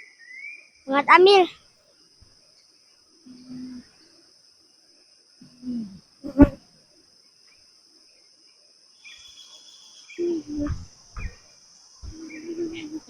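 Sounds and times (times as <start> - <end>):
insects droning: 0.0 - 13.0.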